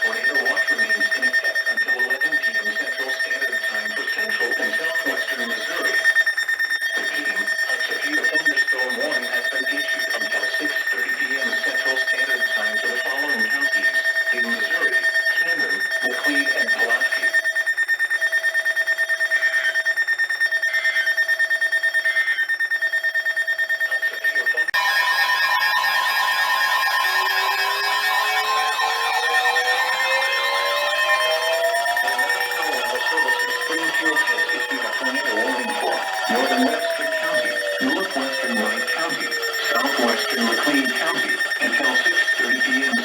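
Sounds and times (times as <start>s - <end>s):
faint voice: 0.0s - 6.0s, 7.0s - 17.2s, 23.9s - 24.8s, 31.9s - 43.0s
pulsing electronic alert alarm: 0.0s - 43.0s.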